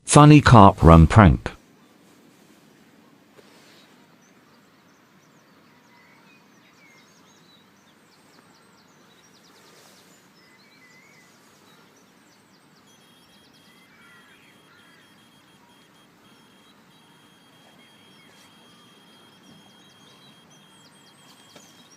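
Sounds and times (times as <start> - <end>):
bird chirps and trills: 4.2 - 21.9
thin steady high tone: 10.8 - 21.9.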